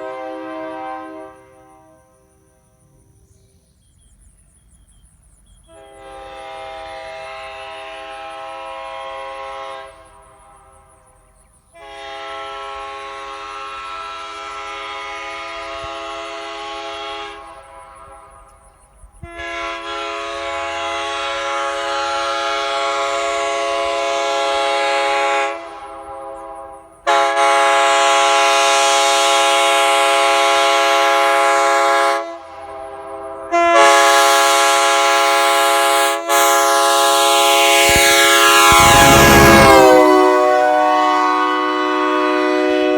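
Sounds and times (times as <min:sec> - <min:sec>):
locomotive air horn chord: 0:00.0 - 0:02.7, 0:05.7 - 0:18.6, 0:19.2 - 0:42.9.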